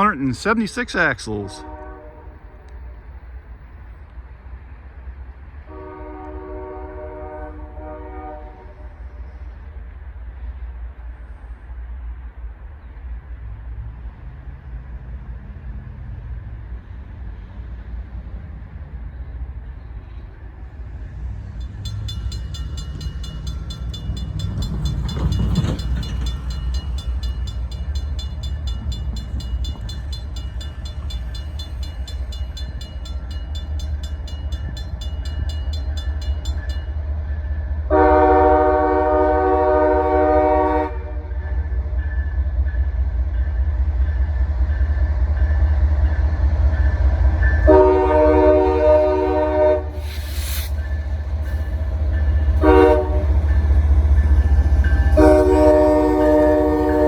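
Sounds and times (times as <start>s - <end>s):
locomotive horn blast: 0.8s - 3.0s, 5.7s - 9.0s, 37.9s - 41.3s, 47.6s - 50.7s, 51.5s - 53.8s, 54.4s - 57.0s
locomotive engine rumble: 16.4s - 38.7s, 47.1s - 57.0s.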